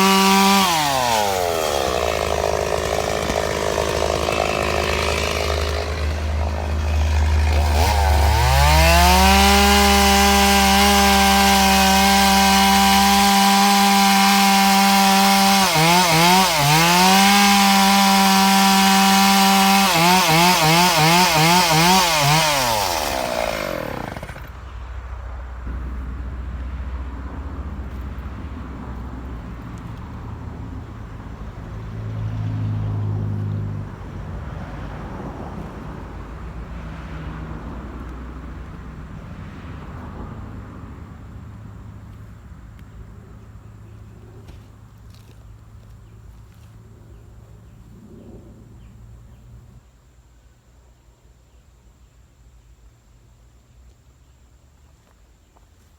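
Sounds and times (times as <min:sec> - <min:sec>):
chainsaw revving: 0:00.0 - 0:24.6.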